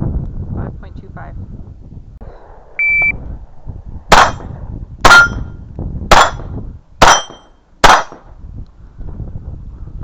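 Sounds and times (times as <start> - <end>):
rifle gunshots: 4.1 - 5.4, 6.1 - 8.2
steel target ringing: 5.0 - 8.2.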